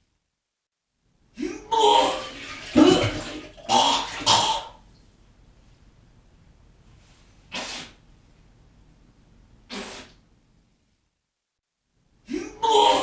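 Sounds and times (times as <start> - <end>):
person retching and vomiting: 1.7 - 4.8
short breathy burst: 7.5 - 8.0, 9.7 - 10.2.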